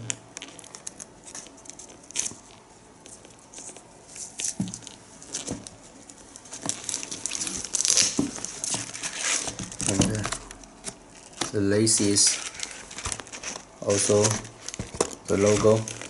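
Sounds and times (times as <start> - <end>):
plastic film crinkling: 0.0 - 16.0.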